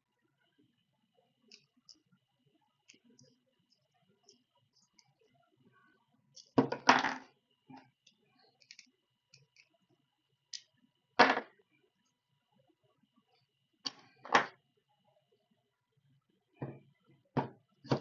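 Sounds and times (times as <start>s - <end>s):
hard objects knocking on surface: 17.4s - 18.0s.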